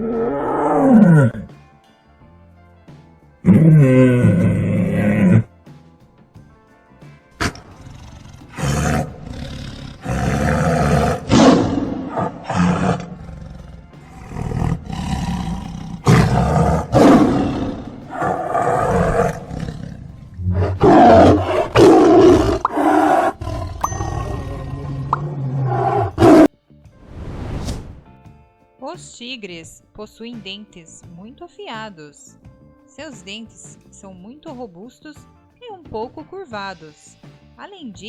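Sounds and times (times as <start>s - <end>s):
tiger roaring: 0.0s - 1.5s, 3.4s - 5.5s, 7.4s - 26.5s.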